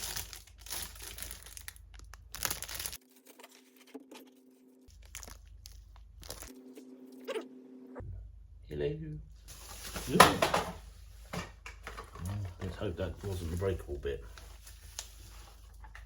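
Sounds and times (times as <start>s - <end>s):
packaging being torn and crinkled: 0.0s - 3.6s, 4.9s - 6.5s.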